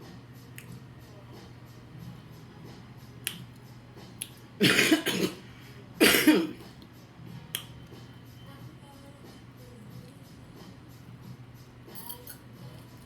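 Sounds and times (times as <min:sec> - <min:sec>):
loud burps: 0:04.6 - 0:05.4.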